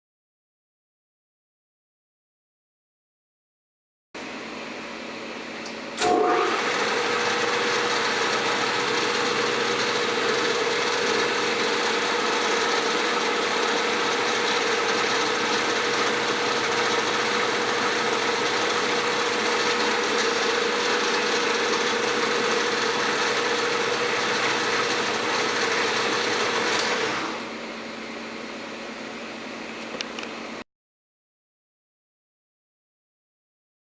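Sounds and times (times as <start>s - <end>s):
lathe running with steady whine: 4.2s - 30.6s
steady shop hum: 4.2s - 30.7s.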